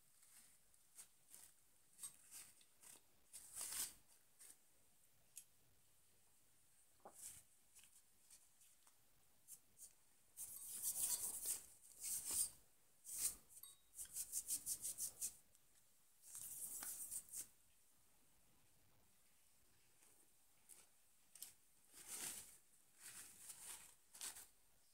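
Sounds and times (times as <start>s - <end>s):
rubbing and scraping: 9.8s - 15.4s.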